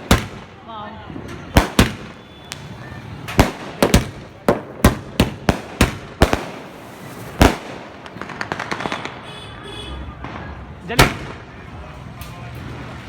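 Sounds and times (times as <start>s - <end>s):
fireworks crackling pops: 0.0s - 0.6s, 1.2s - 9.6s
fireworks sharp bangs: 0.0s - 11.7s.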